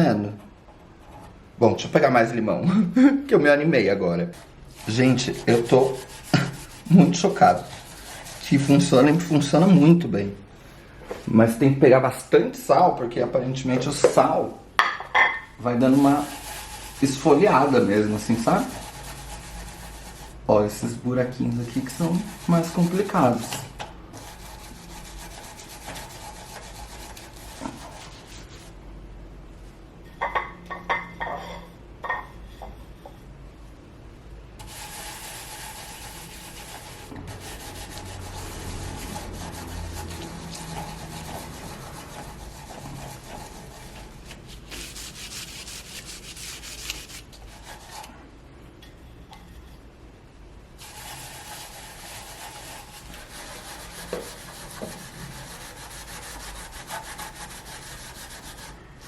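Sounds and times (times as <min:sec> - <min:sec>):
gritty rubbing on copper: 0:04.3 - 0:09.8, 0:15.8 - 0:20.4, 0:21.6 - 0:28.8, 0:34.6 - 0:48.1, 0:50.8 - 0:58.8.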